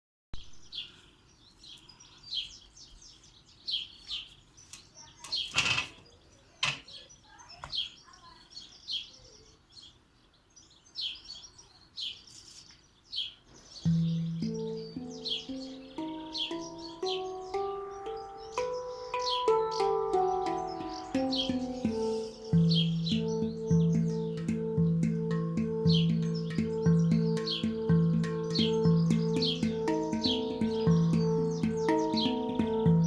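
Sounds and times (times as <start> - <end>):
songbirds chirping: 0.4 - 33.0
handpan low note ringing: 13.9 - 33.0.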